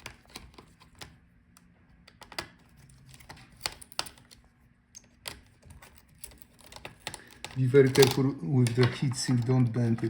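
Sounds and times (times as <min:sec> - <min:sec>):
screwdriver clicks on metal parts: 0:05.0 - 0:09.5.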